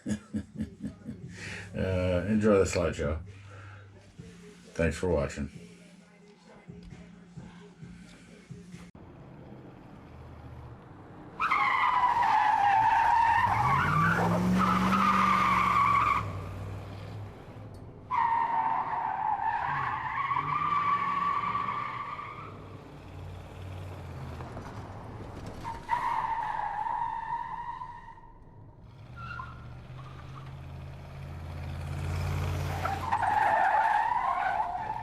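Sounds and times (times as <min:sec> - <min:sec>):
car engine revving: 0:09.0 - 0:18.1, 0:19.4 - 0:26.4, 0:28.3 - 0:35.0
car tyres squealing: 0:11.2 - 0:35.0.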